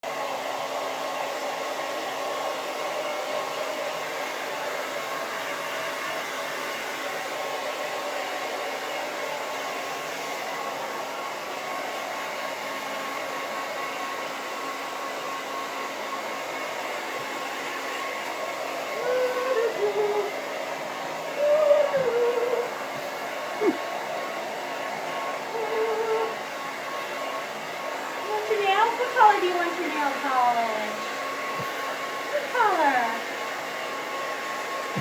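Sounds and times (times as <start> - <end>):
hair dryer running: 0.0 - 35.0.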